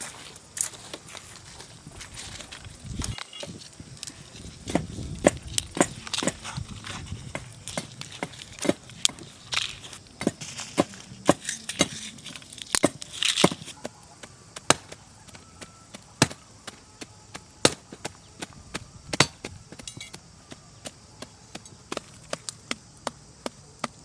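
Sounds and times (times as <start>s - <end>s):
blade chopping: 12.8s - 20.2s.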